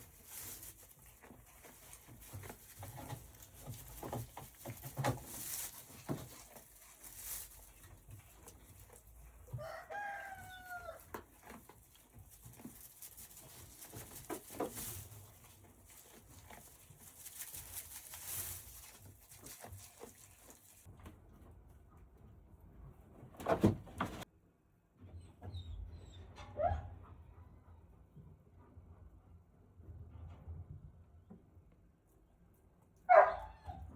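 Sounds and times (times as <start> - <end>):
rooster crowing: 9.6 - 11.1.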